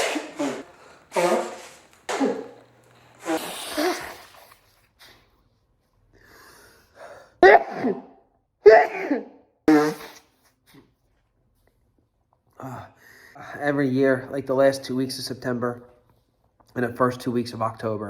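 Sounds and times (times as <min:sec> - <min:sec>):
man sneezing: 0:00.0 - 0:04.5, 0:07.4 - 0:10.2.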